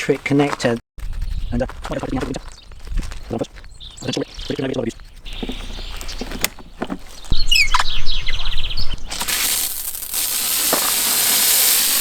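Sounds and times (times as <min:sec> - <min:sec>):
bird chirping and trilling: 0:03.7 - 0:06.4, 0:07.0 - 0:09.2
steady hiss: 0:09.3 - 0:12.0.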